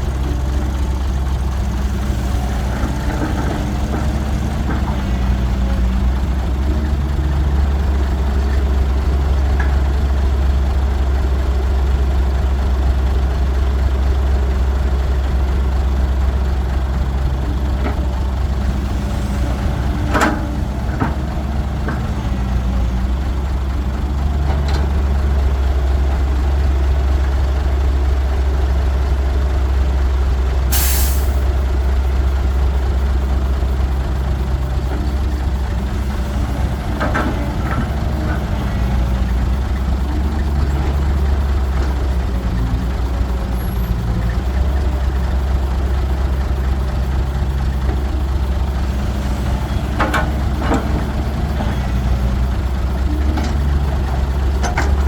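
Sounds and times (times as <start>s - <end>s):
heavy diesel engines running: 0.0s - 55.0s
loud hiss of air: 30.7s - 31.5s.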